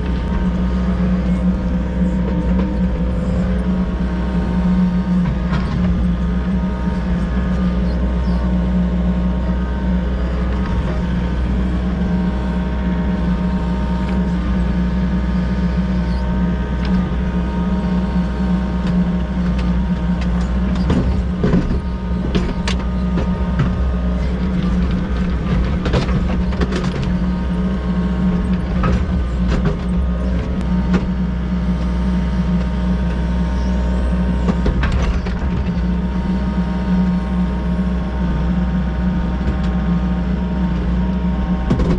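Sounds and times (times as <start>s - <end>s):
excavator diesel engine running: 0.0s - 41.9s.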